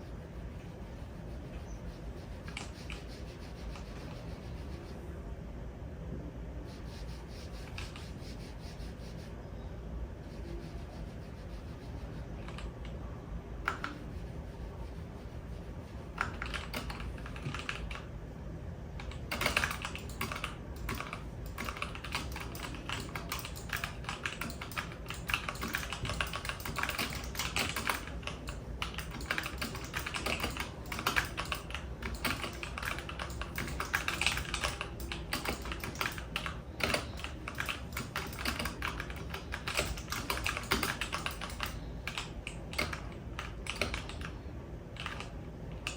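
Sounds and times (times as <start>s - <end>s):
typing on a computer keyboard: 2.4s - 4.3s, 7.5s - 8.1s, 12.4s - 13.0s, 13.6s - 14.1s, 16.1s - 18.1s, 19.0s - 45.9s.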